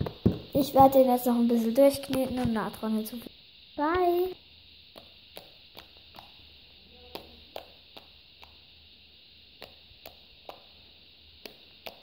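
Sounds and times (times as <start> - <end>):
steady background hiss: 0.0 - 12.0
hands kneading slime smacks: 7.1 - 8.6.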